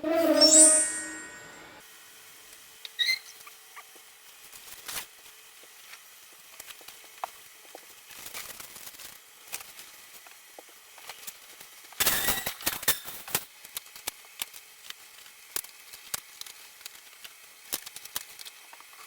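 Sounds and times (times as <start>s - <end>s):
brief squeak: 0.0s - 1.8s, 3.0s - 3.4s.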